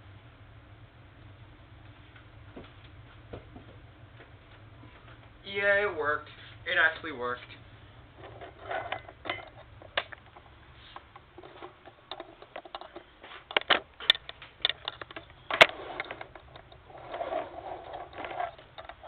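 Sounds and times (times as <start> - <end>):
tripod clicks and knocks: 8.2 - 10.4, 11.1 - 19.0.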